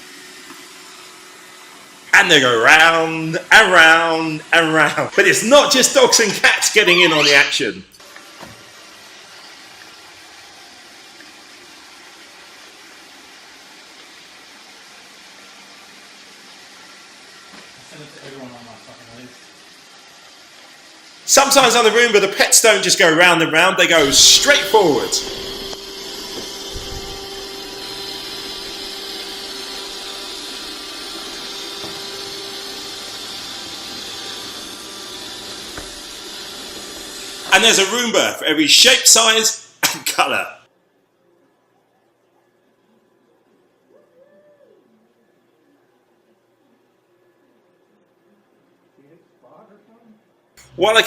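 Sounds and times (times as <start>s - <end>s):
robot vacuum whirring: 23.9s - 38.0s.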